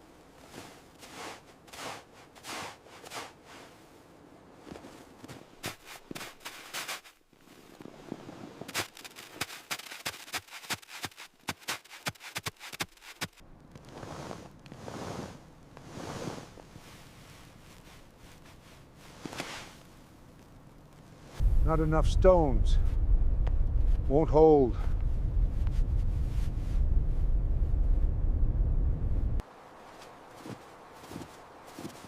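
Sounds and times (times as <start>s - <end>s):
soft crunching: 0.1s - 21.5s, 29.7s - 32.0s.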